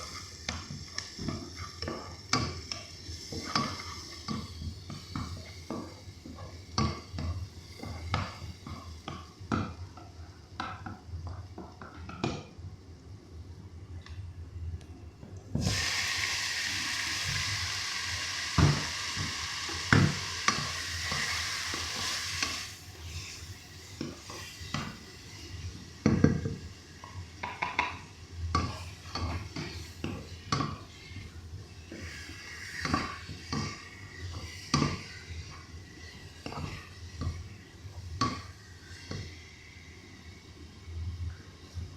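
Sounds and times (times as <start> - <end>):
food sizzling in hot oil: 0.0 - 9.8, 15.6 - 41.9
utensil stirring and knocking pot: 0.0 - 12.5, 18.6 - 22.6, 26.0 - 39.3.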